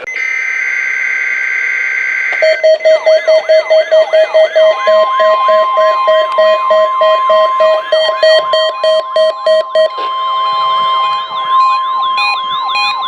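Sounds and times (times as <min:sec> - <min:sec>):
buzzing data tone: 0:00.0 - 0:13.0
pulsing beeps: 0:00.0 - 0:13.0
steady warning alarm tone: 0:00.0 - 0:13.0.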